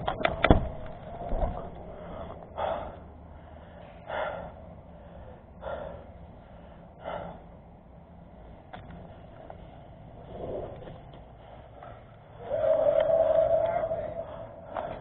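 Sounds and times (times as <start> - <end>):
person panting hard: 2.0 - 8.6, 14.0 - 15.0.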